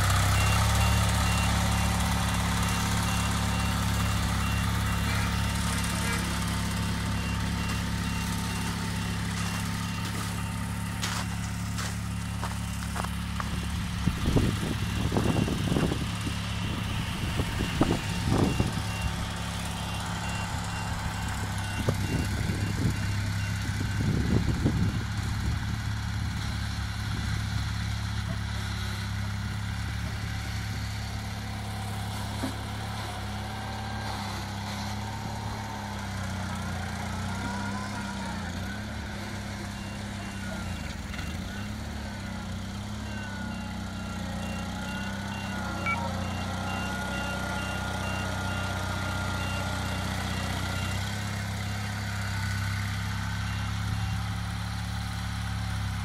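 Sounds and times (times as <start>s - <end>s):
garden tractor engine running: 0.0s - 56.0s.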